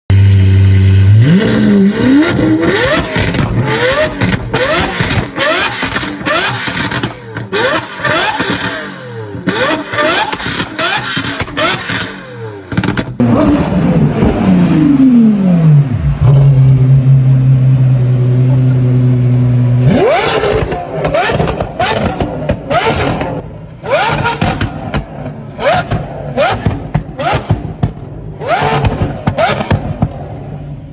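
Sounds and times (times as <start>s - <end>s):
sports car engine revving: 0.1s - 30.9s.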